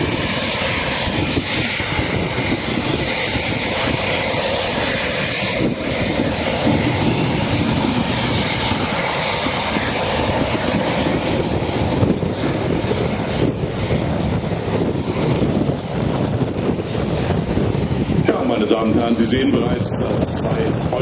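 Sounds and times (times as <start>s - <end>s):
jet engines running: 0.0s - 21.0s.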